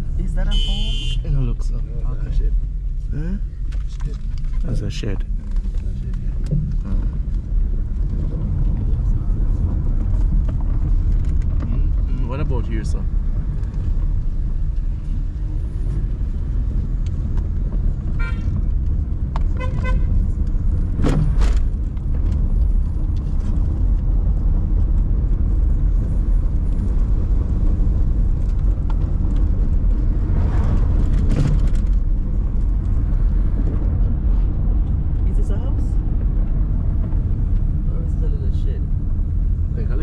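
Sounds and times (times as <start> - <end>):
car road and engine rumble: 0.0 - 40.0
vehicle horn toots: 0.4 - 1.2, 18.2 - 18.6, 19.6 - 20.2.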